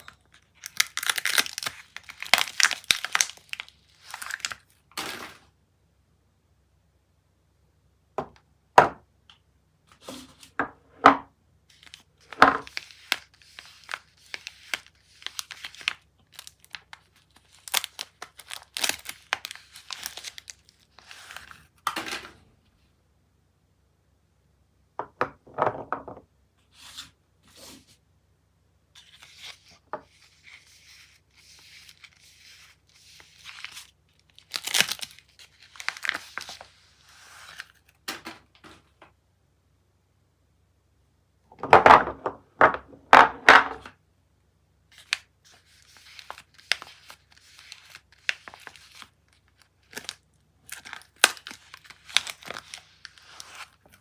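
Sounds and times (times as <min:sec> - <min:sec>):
soap wrapping crinkling: 0:00.0 - 0:04.9, 0:11.7 - 0:21.8, 0:29.0 - 0:38.1, 0:44.9 - 0:54.0.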